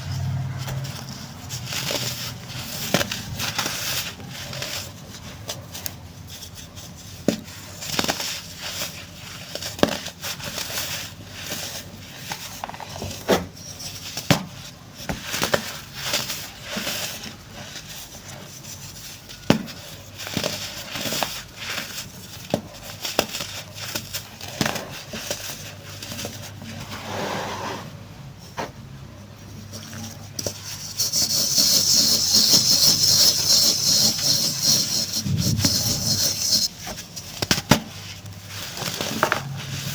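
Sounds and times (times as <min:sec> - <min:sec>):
baking soda crumbling and crackling: 0:34.5 - 0:39.9.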